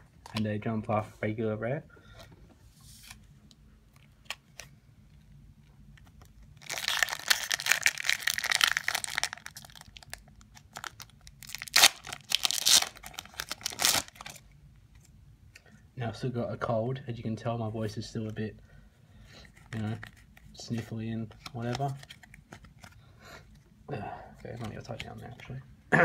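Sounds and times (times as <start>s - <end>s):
foil wrapper tearing and crinkling: 6.2s - 14.4s.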